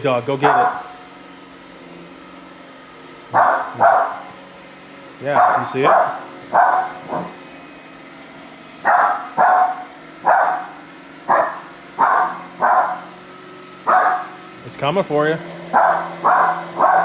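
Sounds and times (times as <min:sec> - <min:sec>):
dog barking: 0:00.4 - 0:01.0, 0:03.3 - 0:04.4, 0:05.3 - 0:07.4, 0:08.8 - 0:13.1, 0:13.8 - 0:14.4, 0:15.7 - 0:17.0.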